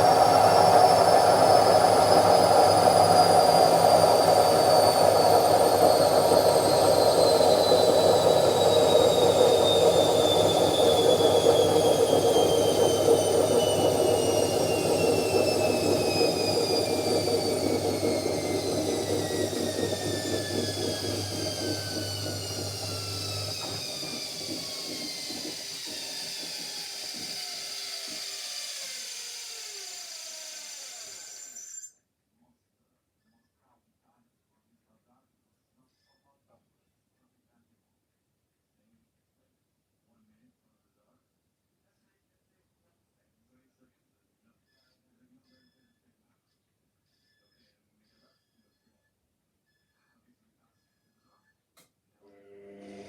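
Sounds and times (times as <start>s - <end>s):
washing machine spin cycle: 0.0s - 31.9s, 52.2s - 53.0s.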